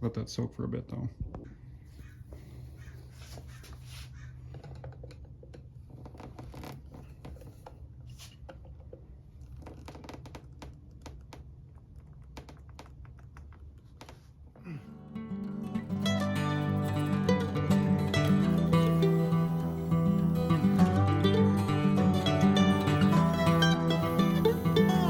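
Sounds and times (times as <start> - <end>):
steady low hum: 13.5 - 25.0.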